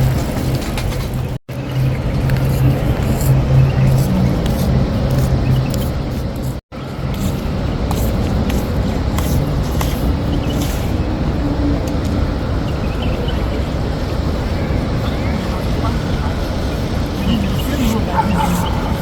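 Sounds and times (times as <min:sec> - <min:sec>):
outdoor rushing noise: 0:00.0 - 0:19.0
faint distant voices: 0:12.3 - 0:19.0.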